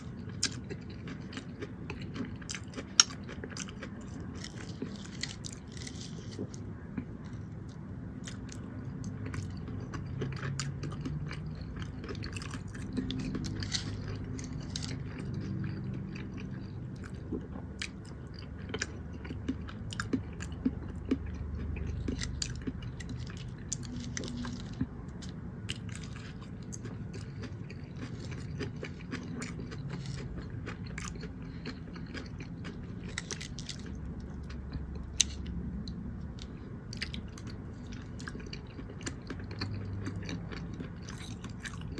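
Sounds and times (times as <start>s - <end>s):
close chewing of food: 0.0s - 41.9s.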